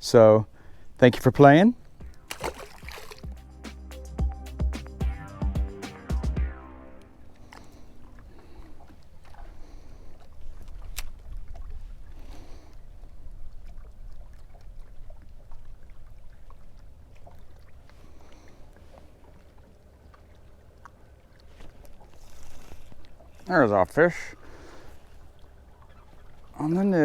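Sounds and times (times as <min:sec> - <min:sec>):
water lapping at boat: 0:01.8 - 0:03.4, 0:07.1 - 0:27.0.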